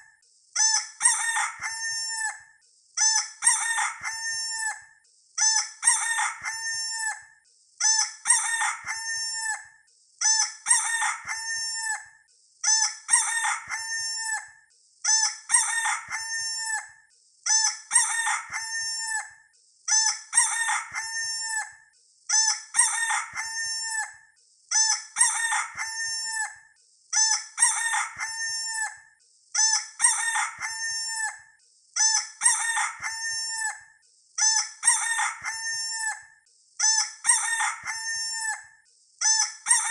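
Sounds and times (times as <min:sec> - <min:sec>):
rooster crowing: 0:01.0 - 0:02.5, 0:03.4 - 0:04.8, 0:05.8 - 0:07.2, 0:08.3 - 0:09.7, 0:10.7 - 0:12.1, 0:12.7 - 0:14.5, 0:15.5 - 0:17.0, 0:17.9 - 0:19.4, 0:20.4 - 0:21.8, 0:22.8 - 0:24.2, 0:25.2 - 0:26.6, 0:27.6 - 0:29.0, 0:30.0 - 0:31.4, 0:32.4 - 0:33.8, 0:34.8 - 0:36.2, 0:37.2 - 0:38.7.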